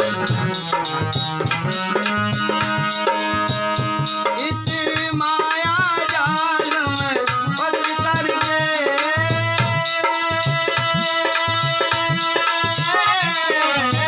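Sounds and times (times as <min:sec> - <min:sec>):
wavering melody line: 0:00.0 - 0:04.6
hand drumming: 0:00.0 - 0:14.0.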